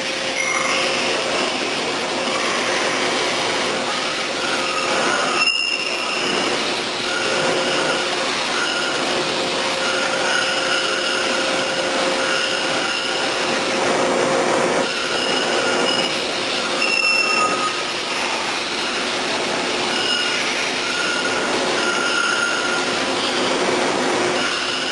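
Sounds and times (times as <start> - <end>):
milling machine grinding metal: 0.0 - 24.9
shrill metallic squealing: 0.4 - 1.3, 4.0 - 13.6, 14.8 - 23.6, 24.3 - 24.9.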